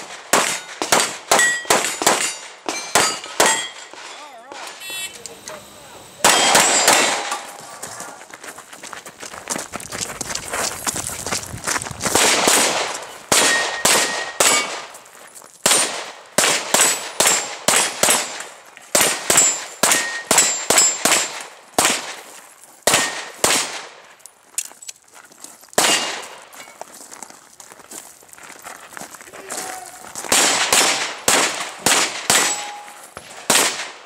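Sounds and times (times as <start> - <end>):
gunshots: 0.0 - 5.6, 6.2 - 7.8, 12.1 - 15.0, 15.6 - 22.2, 22.8 - 24.0, 25.8 - 26.4, 30.2 - 34.0
steel plates ringing: 1.4 - 4.0, 4.7 - 7.6, 32.4 - 33.1.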